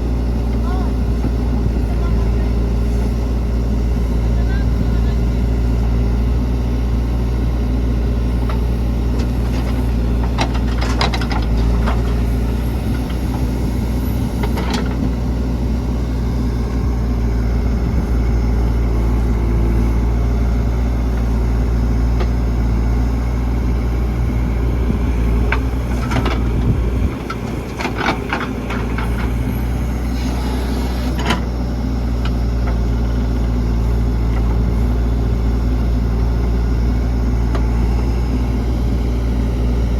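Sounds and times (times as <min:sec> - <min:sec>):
heavy diesel engine running: 0:00.0 - 0:39.9
backhoe clanks and knocks: 0:08.1 - 0:39.9.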